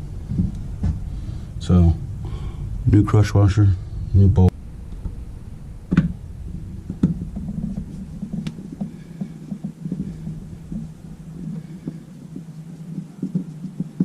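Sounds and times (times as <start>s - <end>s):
low steady hum: 0.0s - 14.0s
light tapping: 6.8s - 14.0s.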